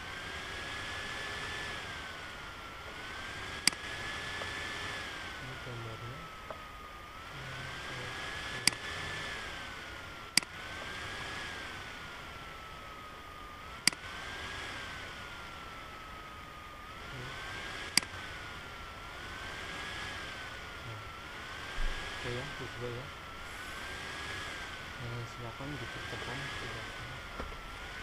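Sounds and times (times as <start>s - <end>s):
lathe machining whine: 0.0s - 28.0s
sharp clicks: 3.6s - 3.8s, 13.8s - 14.0s, 17.9s - 18.1s.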